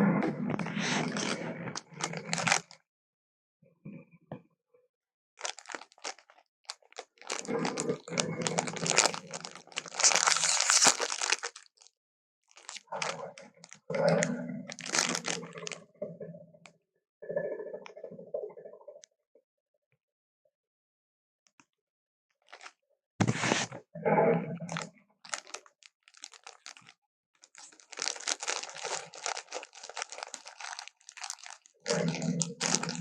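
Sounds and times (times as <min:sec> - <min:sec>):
slowed creature crunching food: 0:00.0 - 0:02.8, 0:05.4 - 0:11.9, 0:12.5 - 0:15.9, 0:24.2 - 0:33.0.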